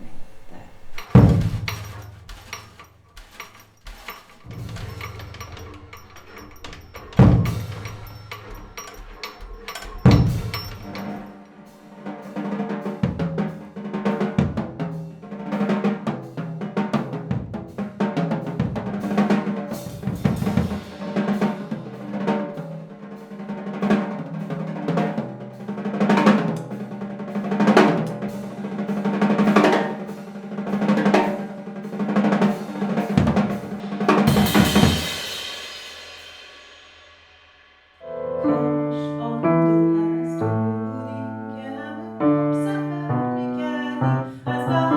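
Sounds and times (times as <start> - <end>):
drum kit played busily: 0.5 - 37.6
piano chords: 38.0 - 44.9.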